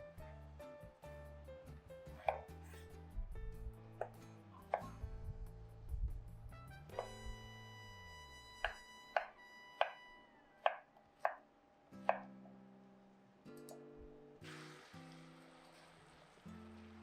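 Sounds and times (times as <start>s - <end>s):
soft background music: 0.0s - 17.0s
knife chopping on cutting board: 8.6s - 10.0s.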